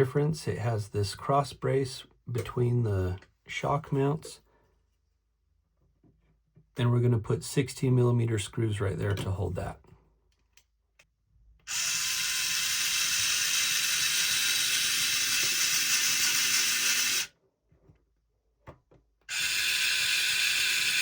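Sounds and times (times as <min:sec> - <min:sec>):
electric screwdriver motor whine: 0:11.7 - 0:17.3, 0:19.3 - 0:21.0.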